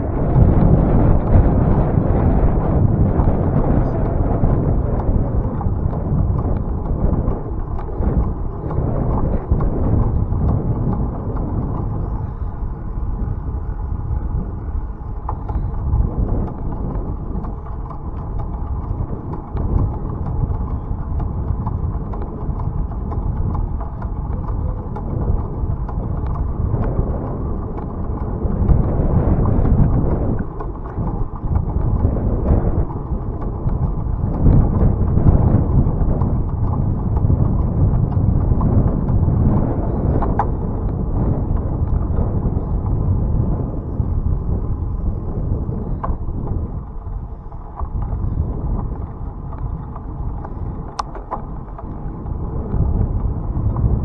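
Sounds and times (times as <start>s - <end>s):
faint bicycle clicks and rattles: 0.0s - 54.0s
wind rumbling on microphone: 0.0s - 54.0s.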